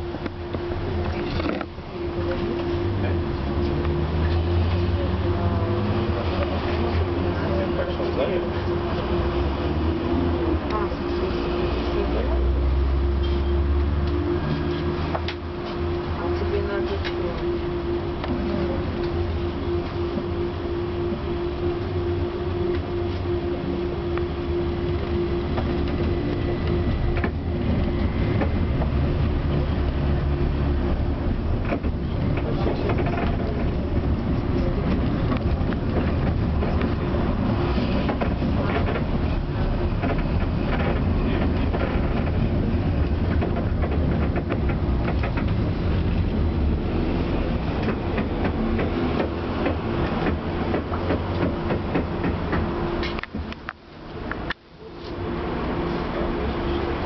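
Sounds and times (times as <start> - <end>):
steady hum: 0.0 - 56.8
wheels rumbling on rails: 0.0 - 57.0
rattling and clicks: 31.4 - 37.2, 37.8 - 46.4.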